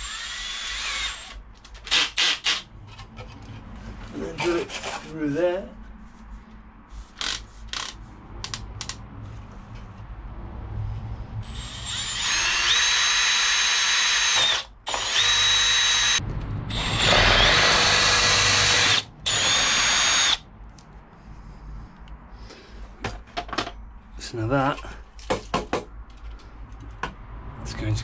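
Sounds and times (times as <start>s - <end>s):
power drill whining: 0.0s - 2.6s, 11.4s - 20.4s.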